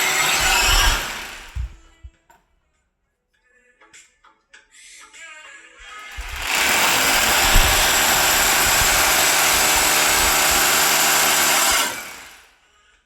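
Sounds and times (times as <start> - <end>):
electric drill running: 0.0 - 1.8, 5.9 - 12.5.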